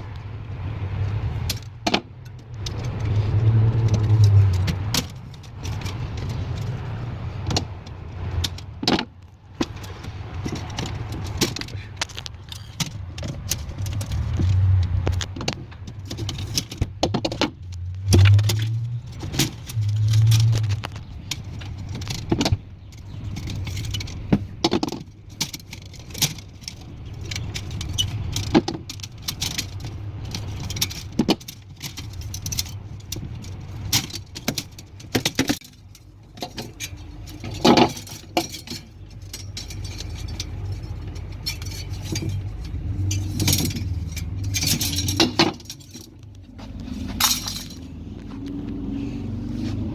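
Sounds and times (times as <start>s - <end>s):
tools and parts clinking: 1.4s - 48.6s
low steady hum: 17.6s - 49.9s.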